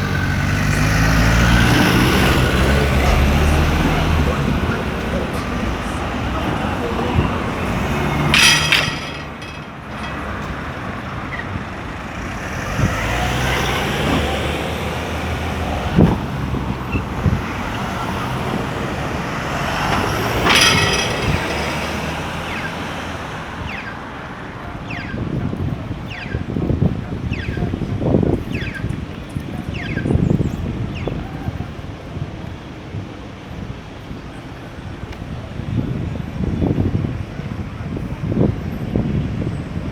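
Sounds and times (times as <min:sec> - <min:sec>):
traffic engines humming: 0:00.0 - 0:39.9
sharp knocks: 0:07.8 - 0:10.6, 0:19.9 - 0:22.9.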